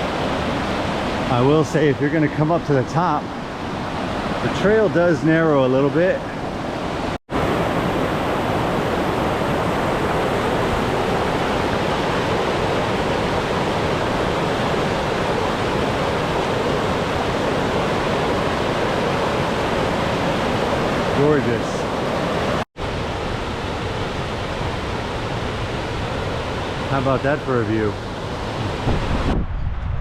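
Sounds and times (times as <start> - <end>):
waterfall rushing: 6.4 - 29.3.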